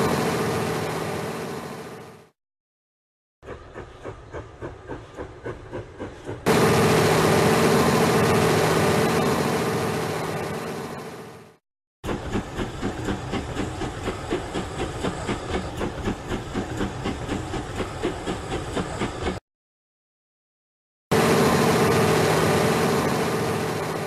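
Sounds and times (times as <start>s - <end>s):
wheels clicking over rail joints: 12.1s - 19.4s.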